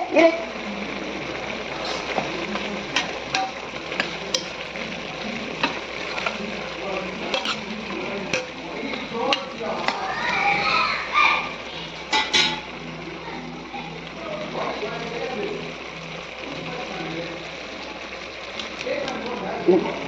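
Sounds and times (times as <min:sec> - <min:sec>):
food sizzling in a pot: 0:00.0 - 0:20.0
spoon knocking against pot: 0:02.9 - 0:04.6, 0:12.1 - 0:12.7.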